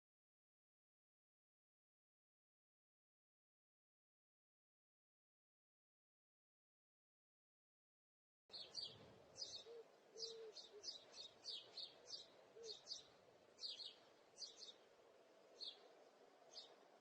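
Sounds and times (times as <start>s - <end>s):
small birds chirping: 8.5s - 17.0s.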